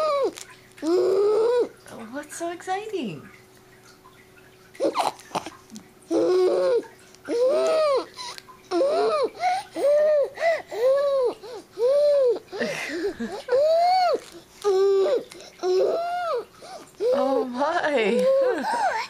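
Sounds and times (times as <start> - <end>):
baby babbling and squealing: 6.1 - 8.1, 13.5 - 16.4.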